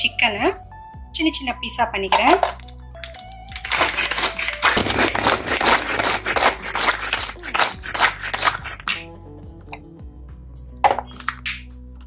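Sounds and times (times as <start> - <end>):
food chopper rattling: 3.6 - 8.8.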